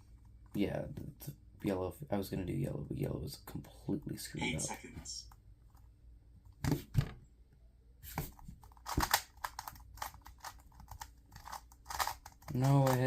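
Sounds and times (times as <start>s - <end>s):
plastic clicks of speed cube turning: 8.6s - 13.0s.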